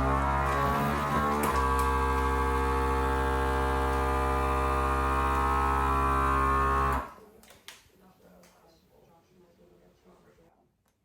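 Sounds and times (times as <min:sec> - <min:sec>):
vacuum sealer pump humming: 0:00.0 - 0:07.2.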